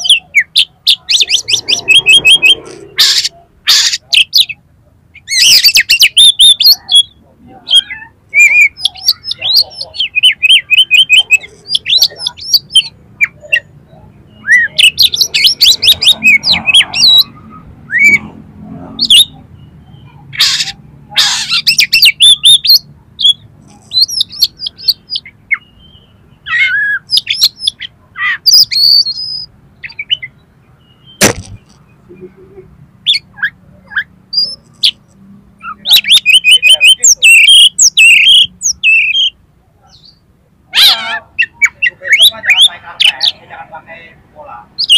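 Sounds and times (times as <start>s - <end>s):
bird singing chirps and trills: 0.0s - 43.4s
harsh rasping bird calls: 0.0s - 43.5s, 44.7s - 44.9s
sharp click: 31.2s - 31.8s.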